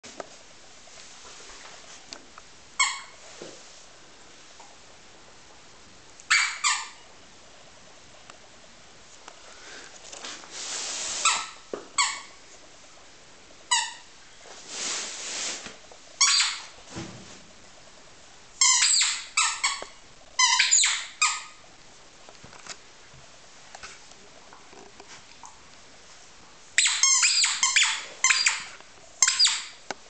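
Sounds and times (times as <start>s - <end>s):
rubber squeaky toy squeaking: 2.8s - 3.2s, 6.3s - 7.0s, 11.2s - 12.4s, 13.7s - 14.1s, 16.2s - 16.7s, 18.6s - 21.6s, 26.8s - 29.8s
long hissing sounds: 9.4s - 11.4s.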